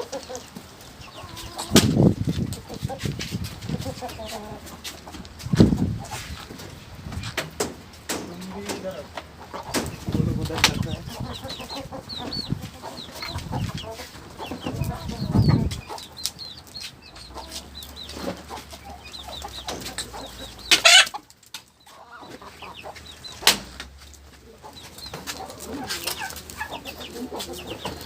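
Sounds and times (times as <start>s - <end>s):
chickens clucking: 0.0s - 28.0s.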